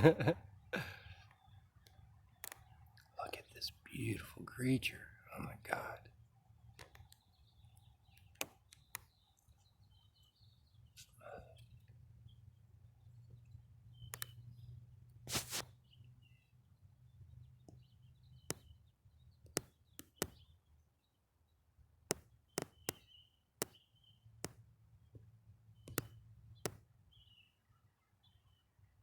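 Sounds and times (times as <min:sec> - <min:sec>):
small birds chirping: 0:00.0 - 0:29.0
sharp clicks and knocks: 0:22.1 - 0:23.8, 0:25.2 - 0:26.8.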